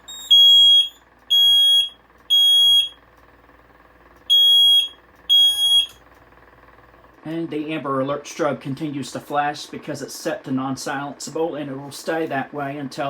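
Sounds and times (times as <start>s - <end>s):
high steady alarm beeps: 0.0s - 3.0s, 4.3s - 6.0s.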